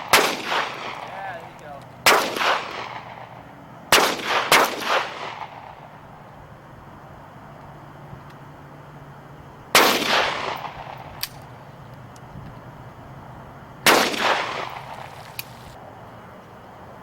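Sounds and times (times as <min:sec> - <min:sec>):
gunshots with echo: 0:00.0 - 0:05.8, 0:13.9 - 0:15.7.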